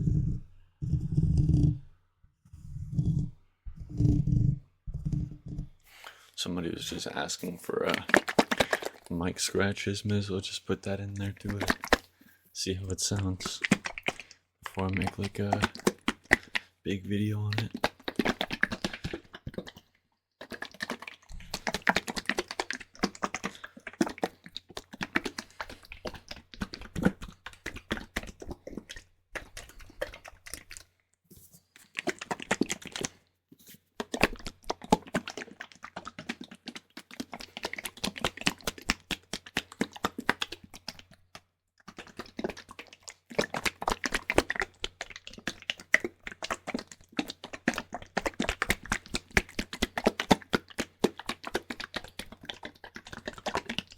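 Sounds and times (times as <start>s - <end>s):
fingernails scratching microphone: 2.5s - 5.8s.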